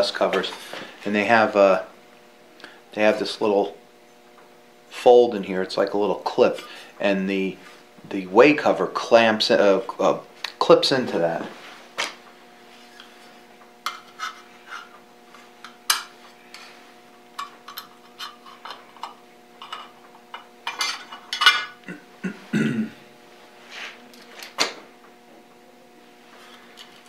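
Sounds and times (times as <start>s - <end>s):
faint steady hum: 0.0s - 27.0s
metal covers clicking and rattling: 17.3s - 21.8s.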